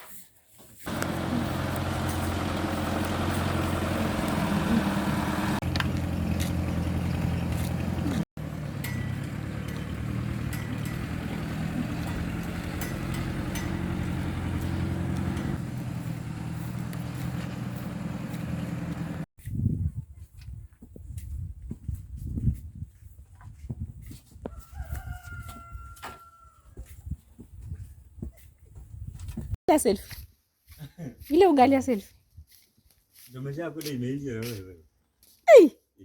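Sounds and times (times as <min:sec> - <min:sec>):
engine running steadily: 0:00.9 - 0:19.3.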